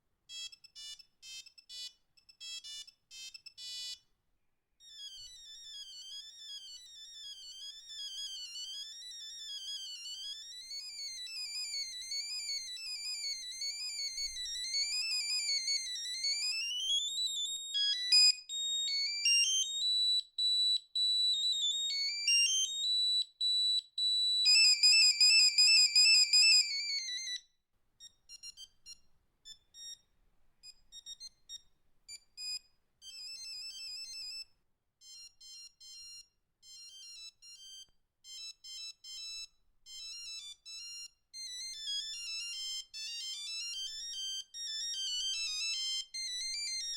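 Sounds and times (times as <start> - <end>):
monophonic phone ringtones: 4.9 - 19.8, 21.4 - 27.4, 35.0 - 46.9.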